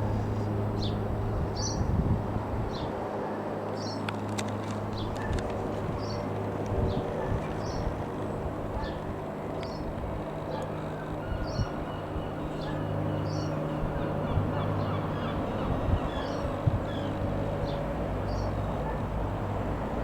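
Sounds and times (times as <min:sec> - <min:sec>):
steady low drone: 0:00.0 - 0:20.0
bird calling: 0:10.5 - 0:19.0.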